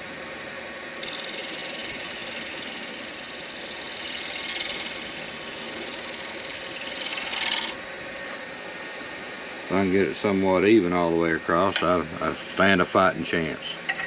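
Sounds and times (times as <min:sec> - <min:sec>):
lathe running: 0:01.0 - 0:07.8
tool scraping hiss: 0:01.0 - 0:07.8.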